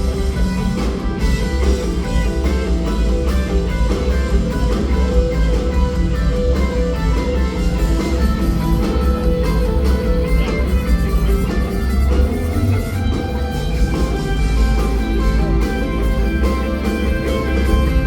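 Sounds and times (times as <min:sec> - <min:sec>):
bass guitar: 0:00.0 - 0:18.0
drum kit: 0:00.0 - 0:18.0.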